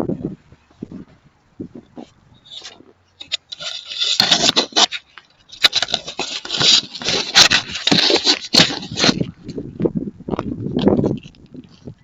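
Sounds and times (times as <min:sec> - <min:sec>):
footsteps crunching in snow: 0:05.6 - 0:09.4.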